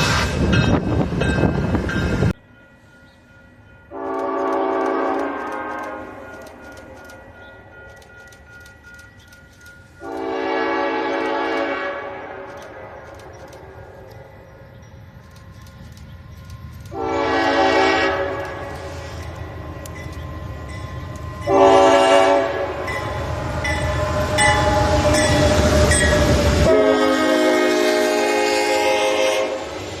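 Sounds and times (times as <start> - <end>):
passing train rumbling: 0.0 - 30.0
locomotive air horn blasts: 3.9 - 6.3, 10.0 - 13.0, 16.9 - 19.9, 21.3 - 29.8.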